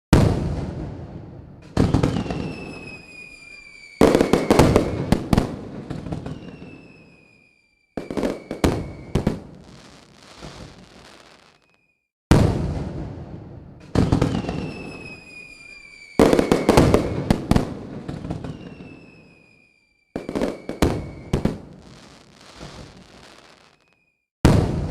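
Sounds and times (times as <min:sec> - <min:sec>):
fireworks bangs: 0:00.1 - 0:24.9
fireworks crackling: 0:01.6 - 0:12.9, 0:13.8 - 0:24.9
high whistles sliding down: 0:02.1 - 0:05.0, 0:06.2 - 0:12.0, 0:14.3 - 0:17.3, 0:18.2 - 0:21.4.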